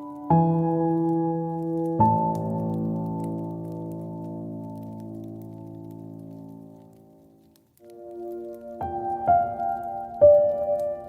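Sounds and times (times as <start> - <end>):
soft piano chord: 0.0 - 7.2
faint scattered crackles: 0.0 - 11.0.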